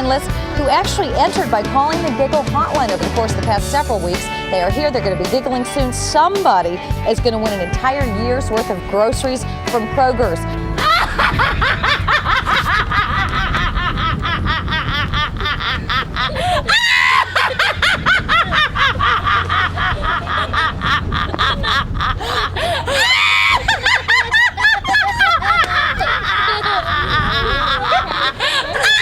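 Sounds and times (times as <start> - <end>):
person giggling: 10.8 - 29.0.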